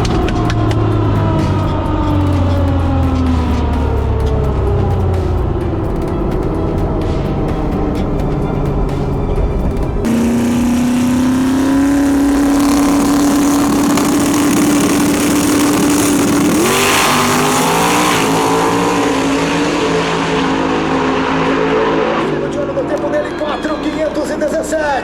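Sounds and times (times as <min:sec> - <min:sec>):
race car engine at high revs: 0:10.0 - 0:23.0.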